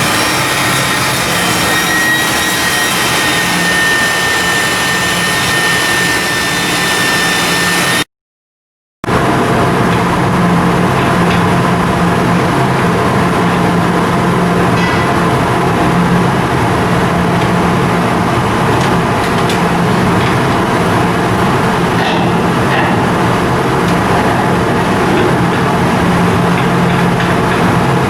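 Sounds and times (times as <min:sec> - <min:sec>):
ship diesel engine running: 0:00.0 - 0:06.9.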